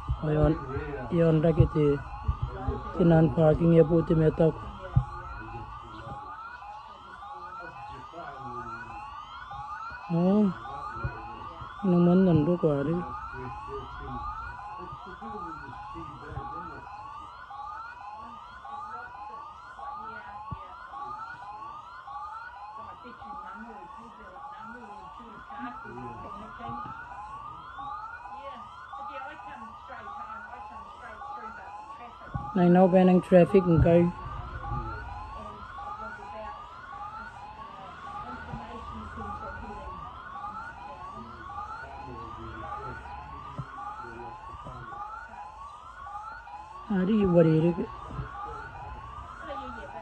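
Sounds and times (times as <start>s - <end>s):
warning siren whooping: 0.0s - 50.0s
low rumble of traffic: 29.7s - 50.0s.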